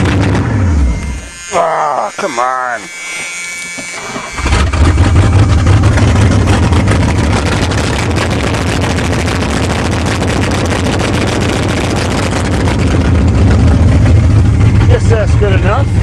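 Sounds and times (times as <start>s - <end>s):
car engine starting and idling: 3.8s - 16.0s.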